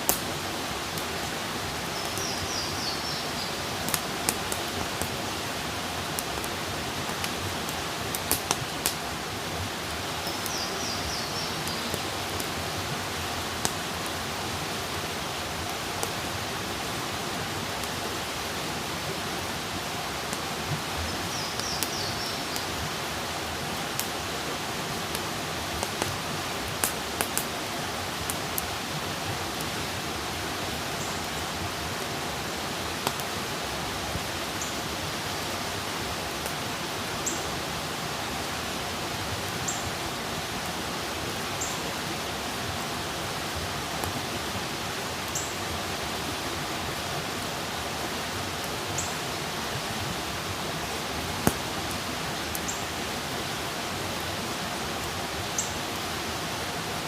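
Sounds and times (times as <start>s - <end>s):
campfire crackling and popping: 0.0s - 14.4s, 17.7s - 18.0s, 19.5s - 22.8s, 23.4s - 29.8s, 32.8s - 34.8s, 42.6s - 44.5s, 50.2s - 53.0s.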